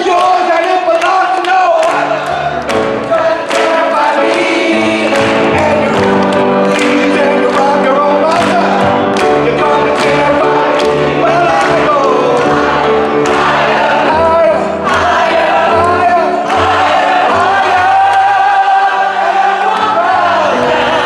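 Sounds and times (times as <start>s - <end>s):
singer with live band: 0.0s - 21.0s.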